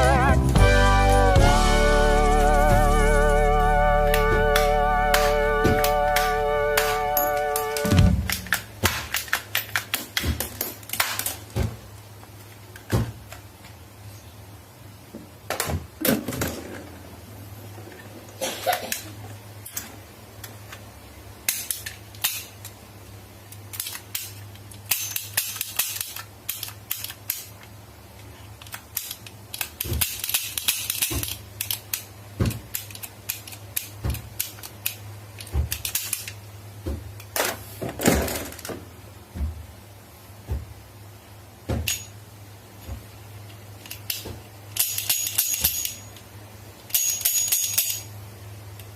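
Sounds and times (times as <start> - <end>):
low hum: 0.0 - 8.6
plastic toy gun clicks and snaps: 7.8 - 11.4, 21.5 - 22.8, 23.5 - 27.8, 28.6 - 36.4, 43.8 - 46.0.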